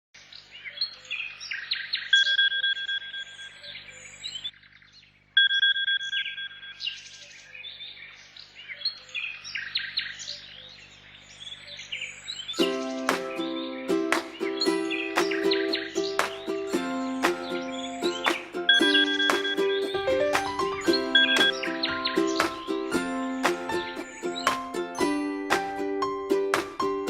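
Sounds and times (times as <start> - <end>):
songbirds chirping and trilling: 0.2 - 26.6.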